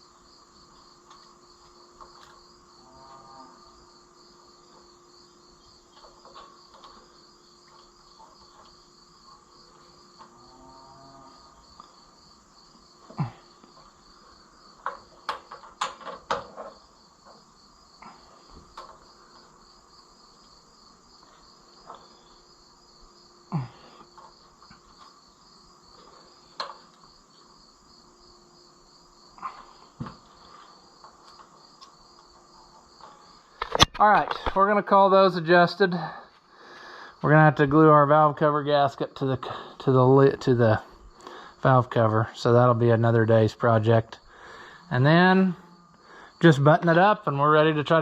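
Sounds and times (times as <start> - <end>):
crickets chirping: 0.0 - 48.0.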